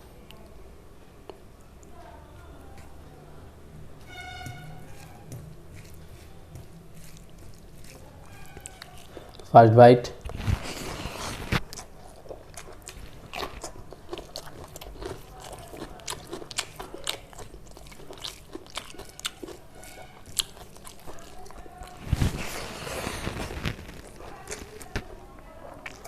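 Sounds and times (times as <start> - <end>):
crunchy food chewing: 4.1 - 9.5, 10.2 - 26.0.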